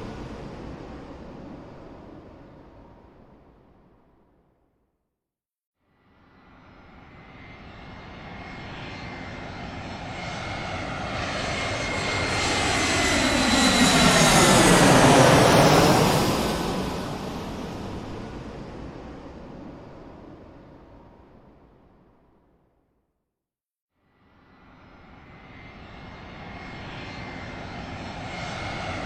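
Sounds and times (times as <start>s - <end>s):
airplane flying past: 0.0s - 3.3s, 6.2s - 21.4s, 24.4s - 29.0s.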